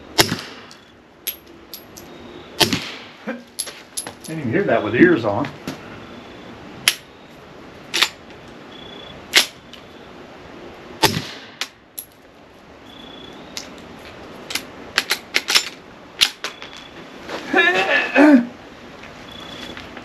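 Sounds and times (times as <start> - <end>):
gunshots: 2.6 - 3.2.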